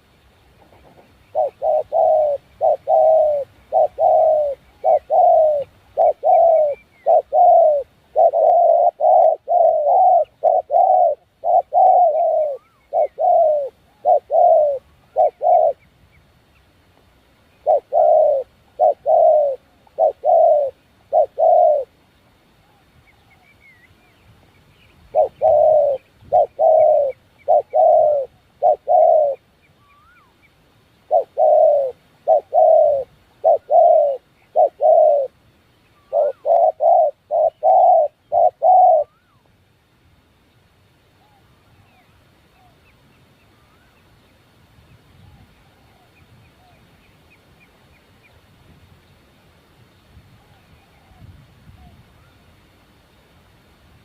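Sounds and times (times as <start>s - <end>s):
faint bird chirps: 0.0s - 16.8s, 17.5s - 39.6s, 40.3s - 48.4s
bird calling repeated notes: 1.3s - 15.9s, 17.6s - 21.9s, 25.1s - 30.4s, 31.1s - 35.4s, 36.0s - 39.5s.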